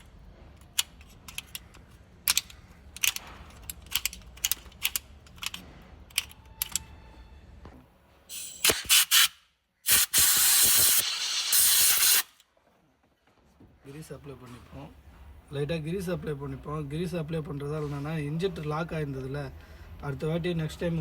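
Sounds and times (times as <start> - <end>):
spray hissing: 8.3 - 9.3, 9.9 - 12.4.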